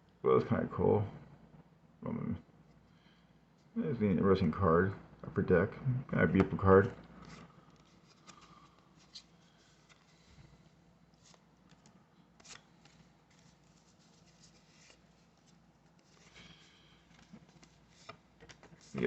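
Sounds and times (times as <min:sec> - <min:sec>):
trading cards clicking and rustling: 0:11.2 - 0:19.0.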